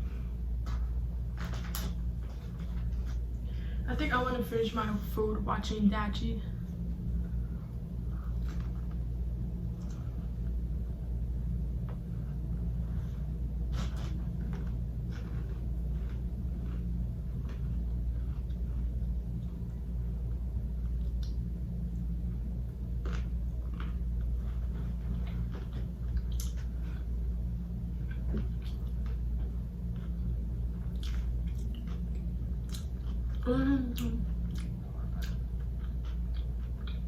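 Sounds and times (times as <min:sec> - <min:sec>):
low room rumble: 0:00.0 - 0:37.0
quiet eating clicks: 0:22.9 - 0:27.1, 0:28.0 - 0:37.0.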